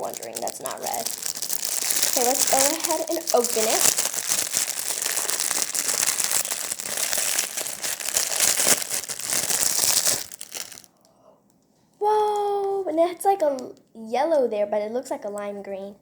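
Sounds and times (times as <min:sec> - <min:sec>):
packaging wrapper crinkling: 0:00.0 - 0:10.9.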